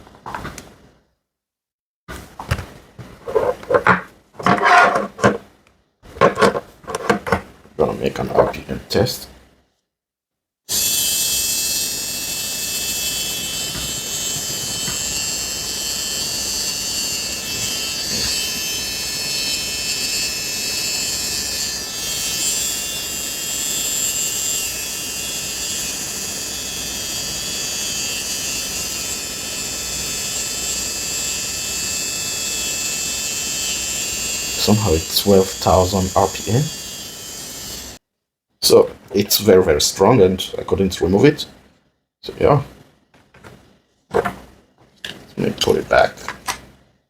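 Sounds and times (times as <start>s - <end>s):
hair trimmer motor whining: 10.7s - 38.0s.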